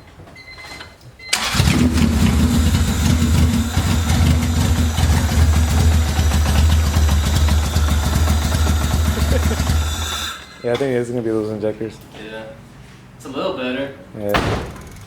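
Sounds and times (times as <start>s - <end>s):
car engine idling unevenly: 1.5s - 10.4s.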